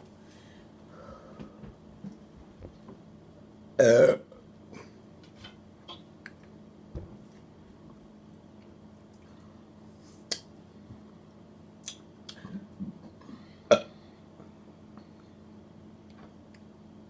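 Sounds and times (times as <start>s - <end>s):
person burping: 3.8s - 4.9s, 13.7s - 14.0s.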